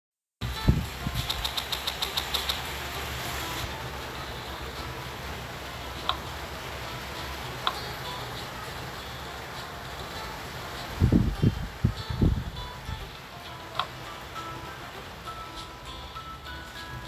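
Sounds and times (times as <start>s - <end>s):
budgie clicking: 1.0s - 2.8s, 13.7s - 14.0s.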